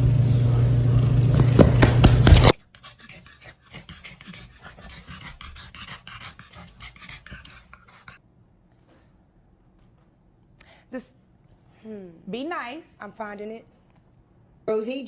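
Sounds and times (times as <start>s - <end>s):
dog panting: 2.3s - 8.2s.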